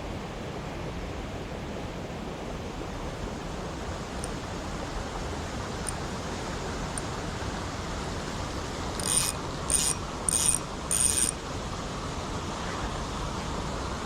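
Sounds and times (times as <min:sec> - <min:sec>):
fishing reel winding: 0:08.8 - 0:11.5.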